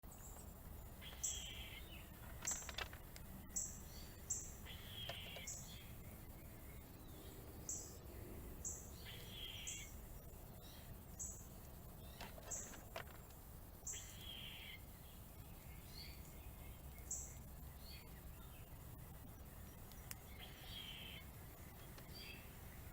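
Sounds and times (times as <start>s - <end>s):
songbirds chirping: 0.0s - 22.9s
steady low rumble: 0.1s - 12.2s.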